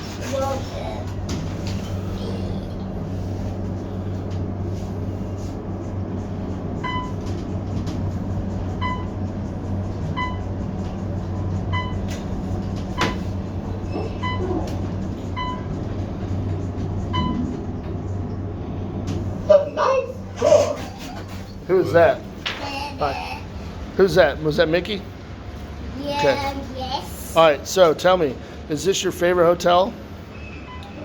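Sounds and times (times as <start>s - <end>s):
elevator hum: 0.0s - 31.0s
short elevator beep: 6.8s - 7.2s, 8.8s - 9.2s, 10.1s - 10.6s, 11.6s - 12.2s, 12.9s - 14.7s, 15.3s - 15.7s, 17.1s - 17.6s.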